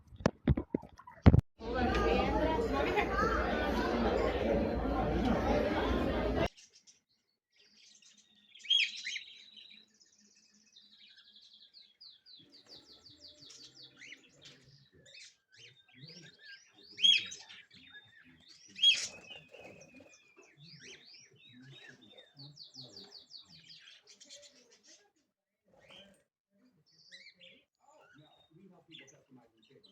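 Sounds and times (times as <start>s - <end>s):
small birds chirping: 6.4s - 29.9s
loud sharp bird calls: 8.2s - 9.9s, 12.2s - 24.7s.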